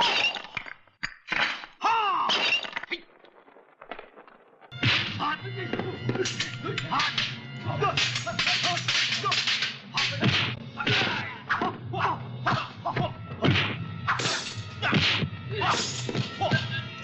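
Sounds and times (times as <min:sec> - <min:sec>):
punch whacks: 0:04.8 - 0:05.2, 0:09.0 - 0:11.2, 0:13.4 - 0:16.4.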